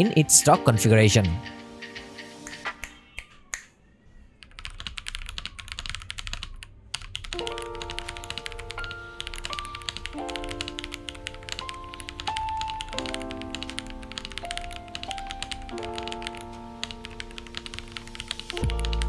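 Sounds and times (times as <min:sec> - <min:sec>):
background music with held chords: 0:00.0 - 0:03.2, 0:07.4 - 0:19.0
rapid typing on mechanical keyboard: 0:04.4 - 0:19.0.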